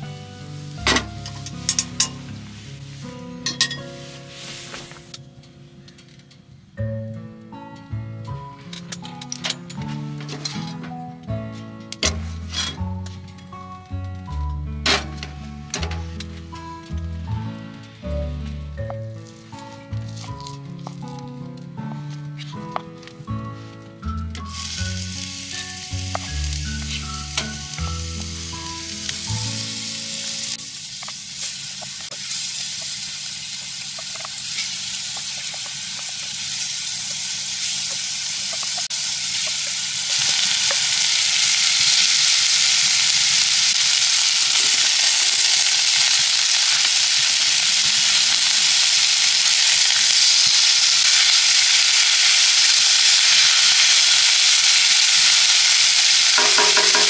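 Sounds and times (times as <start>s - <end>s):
food sizzling in frying: 0.0s - 5.1s, 19.0s - 21.3s, 24.0s - 57.0s.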